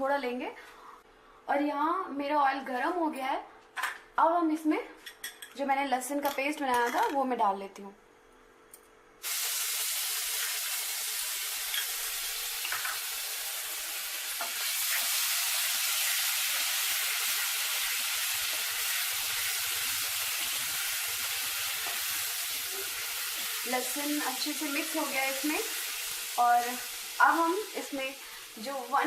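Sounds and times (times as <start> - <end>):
paste sizzling in hot oil: 9.2 - 29.0.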